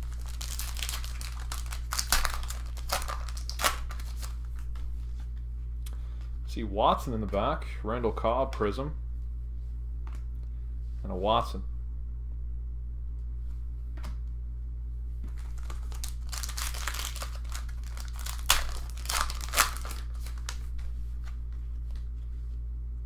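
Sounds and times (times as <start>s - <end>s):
wrapper tearing snaps: 0.0s - 4.7s, 15.3s - 20.7s
foil wrapper crinkling: 0.0s - 4.8s, 15.3s - 21.4s.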